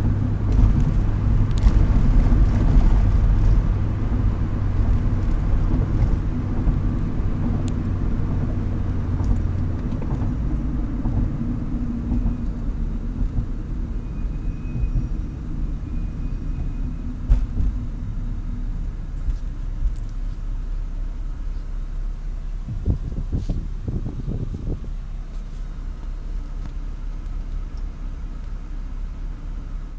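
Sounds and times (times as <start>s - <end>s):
car engine idling unsteadily: 16.9s - 29.9s.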